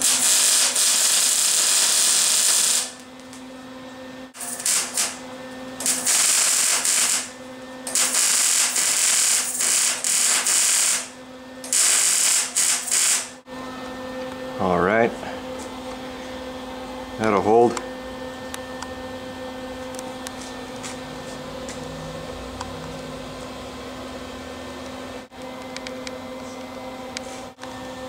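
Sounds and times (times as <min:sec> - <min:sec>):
arc welder crackling and hissing: 0:00.0 - 0:03.4, 0:04.3 - 0:13.4
steady hum: 0:00.0 - 0:28.0.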